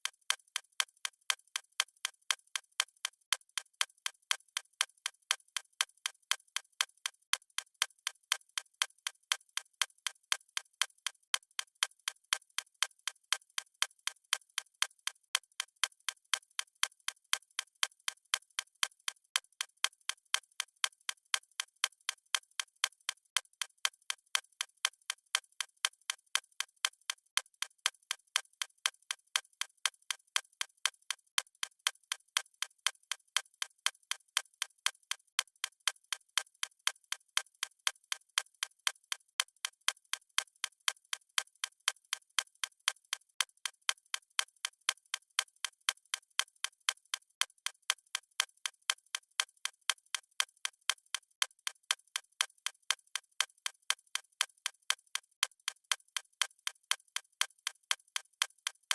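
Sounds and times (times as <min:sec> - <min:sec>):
watch ticking: 0:32.4 - 0:58.9.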